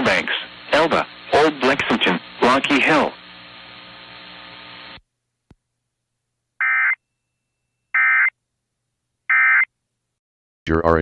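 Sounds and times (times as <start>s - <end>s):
radio hiss and hum: 0.0s - 5.0s
digital data tone bursts: 6.6s - 7.0s, 8.0s - 8.3s.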